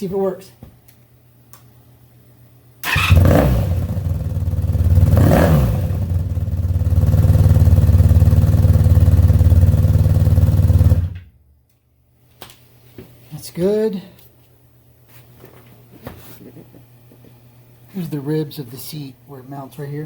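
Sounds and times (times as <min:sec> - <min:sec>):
motorcycle engine starting and revving: 0:02.8 - 0:11.3.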